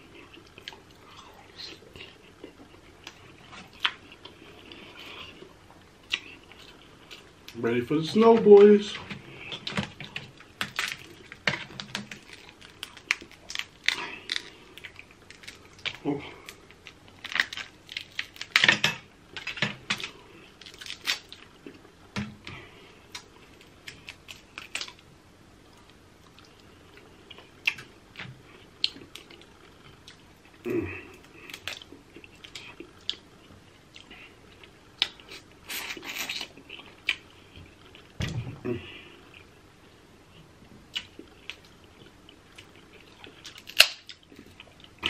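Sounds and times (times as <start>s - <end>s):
close-up chewing: 0.0s - 7.6s, 9.0s - 18.6s
crab shells cracking: 9.5s - 21.5s, 43.4s - 44.4s.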